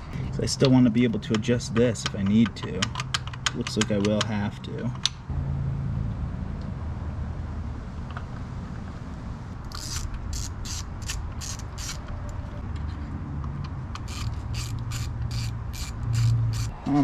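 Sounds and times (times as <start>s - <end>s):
ratchet wrench clicking: 9.7s - 12.1s, 13.9s - 16.8s.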